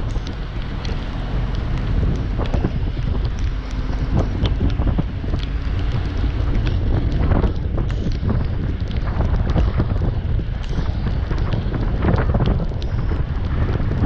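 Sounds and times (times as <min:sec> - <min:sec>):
sharp cracks and knocks: 0:00.0 - 0:14.0
wind buffeting microphone: 0:00.0 - 0:14.0.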